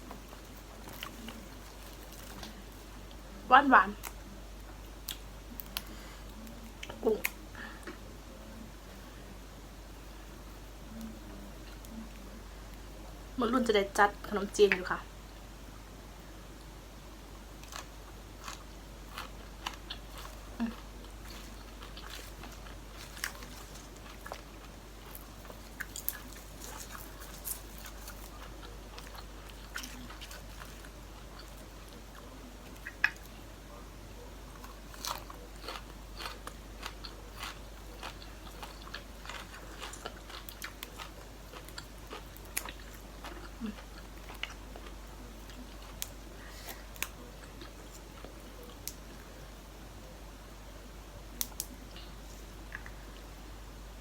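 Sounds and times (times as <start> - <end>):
person chewing and crunching food: 0.0 - 3.3, 17.6 - 33.4, 34.2 - 49.4
sharp clicks and snaps: 51.4 - 52.1.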